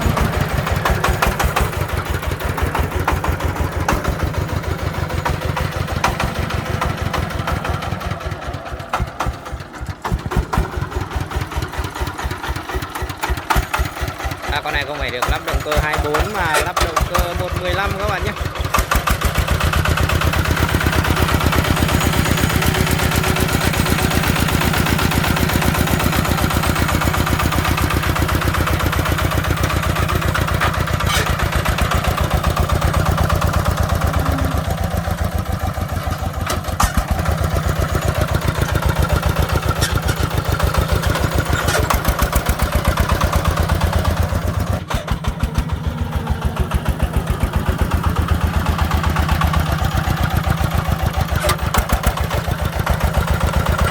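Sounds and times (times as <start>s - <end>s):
diesel engine running: 0.0s - 53.9s
sharp clacks: 15.2s - 17.4s.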